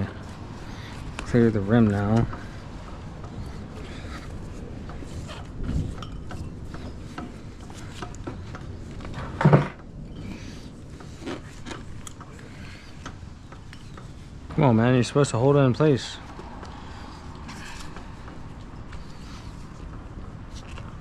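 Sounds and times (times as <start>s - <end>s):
metal tools clinking on wheel rim: 1.2s - 16.3s.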